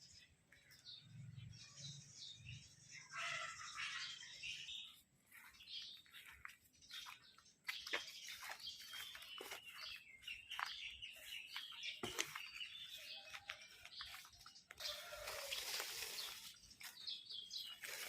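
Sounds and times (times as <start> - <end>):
small birds chirping: 0.0 - 18.0.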